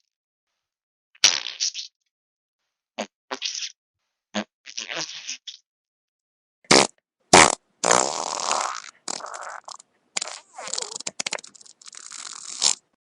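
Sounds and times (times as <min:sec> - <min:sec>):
wet fart sound effect: 0:01.2 - 0:01.9, 0:04.4 - 0:05.5, 0:06.7 - 0:12.8.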